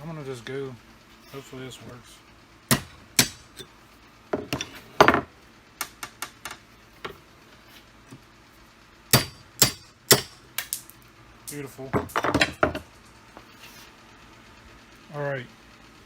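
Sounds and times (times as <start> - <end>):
tool clinking and knocking: 2.7 - 3.7.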